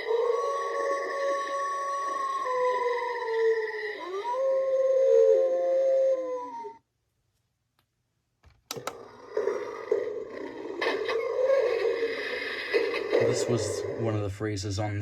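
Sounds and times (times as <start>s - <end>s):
recorded howl from speaker: 0.0s - 6.8s, 9.0s - 12.3s
sharp clicks: 8.4s - 9.1s.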